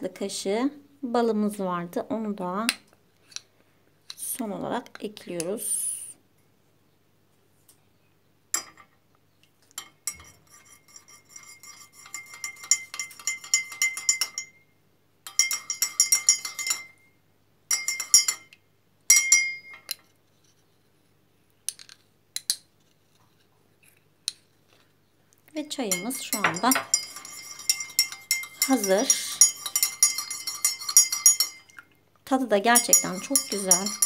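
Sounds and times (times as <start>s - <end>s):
spoon clinking in a mug: 9.7s - 17.1s, 17.7s - 20.0s, 25.9s - 31.9s, 32.6s - 34.0s.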